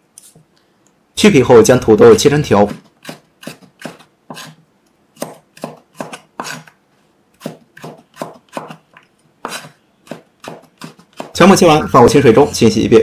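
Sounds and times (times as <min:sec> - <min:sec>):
knife chopping on cutting board: 0:02.7 - 0:04.6, 0:05.2 - 0:06.7, 0:07.4 - 0:11.5.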